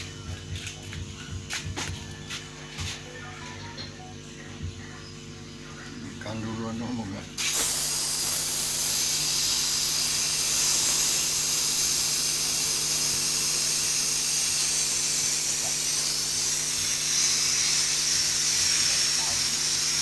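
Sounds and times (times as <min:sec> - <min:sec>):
electric motor hum: 0:00.0 - 0:20.0
gas hissing through pipes: 0:04.4 - 0:20.0.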